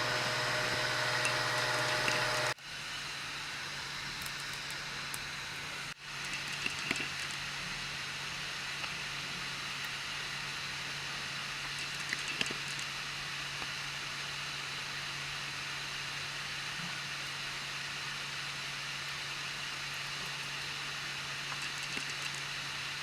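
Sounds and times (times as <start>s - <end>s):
sharp extruder clicks: 0.0s - 2.6s, 11.7s - 12.9s, 21.5s - 22.5s
printer fan hiss and motor hum: 0.0s - 23.0s.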